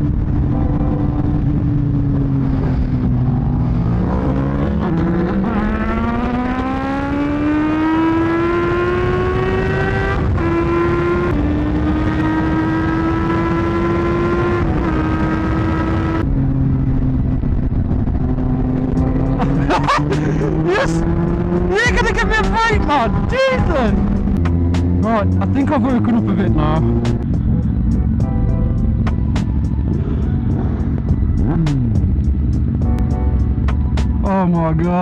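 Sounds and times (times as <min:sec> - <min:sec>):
motorcycle engine revving: 0:00.0 - 0:35.0
wind rush: 0:14.4 - 0:25.4.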